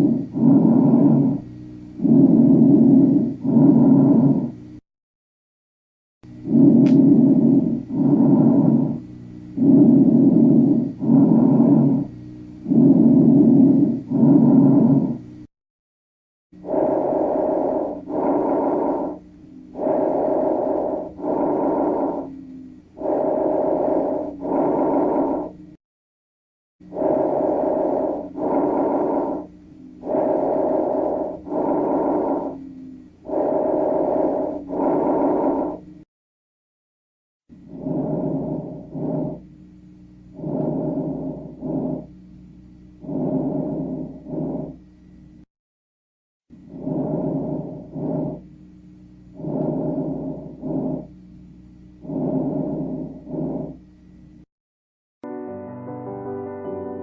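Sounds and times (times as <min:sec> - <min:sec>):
breathing through stethoscope: 0:00.0 - 0:01.4, 0:02.0 - 0:04.6, 0:06.4 - 0:09.0, 0:09.6 - 0:15.2, 0:16.6 - 0:25.7, 0:26.9 - 0:36.0, 0:37.6 - 0:39.4, 0:40.4 - 0:42.1, 0:43.0 - 0:44.8, 0:46.7 - 0:48.4, 0:49.4 - 0:51.1, 0:52.0 - 0:53.8
low snoring lung tone: 0:00.0 - 0:04.8, 0:06.3 - 0:15.5, 0:16.6 - 0:25.8, 0:26.8 - 0:36.1, 0:37.5 - 0:45.5, 0:46.5 - 0:54.2.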